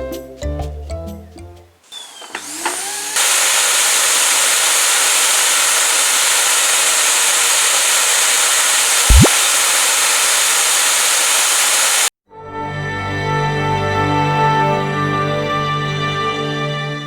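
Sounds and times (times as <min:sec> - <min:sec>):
vacuum cleaner running: 0:01.9 - 0:12.1.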